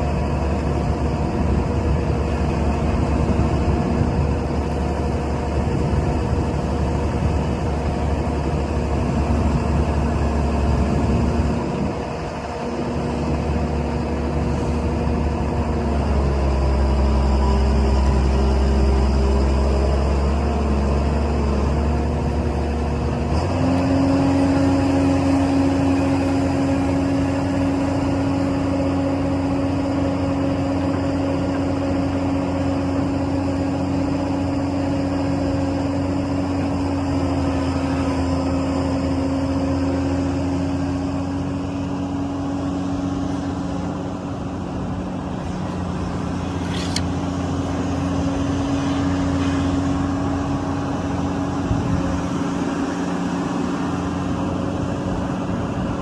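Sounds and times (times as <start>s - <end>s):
heavy machinery diesel engines: 0.0s - 56.0s.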